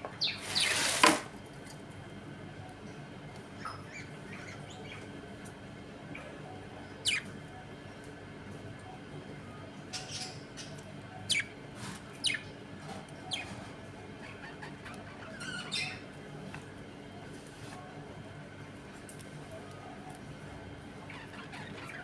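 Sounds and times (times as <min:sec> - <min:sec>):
budgerigars chirping: 0:07.0 - 0:07.3, 0:09.9 - 0:11.5, 0:12.1 - 0:12.5, 0:13.3 - 0:13.6, 0:14.2 - 0:16.1.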